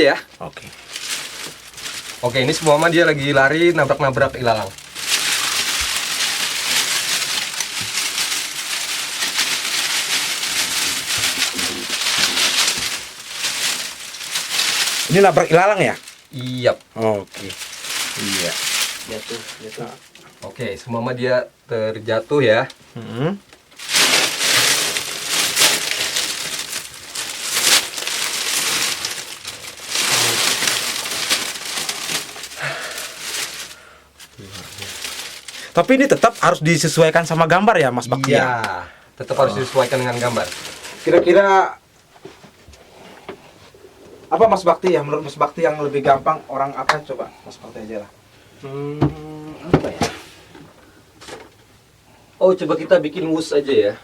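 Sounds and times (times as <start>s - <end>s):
grass rustling and swishing: 0.8s - 16.6s, 23.8s - 37.4s.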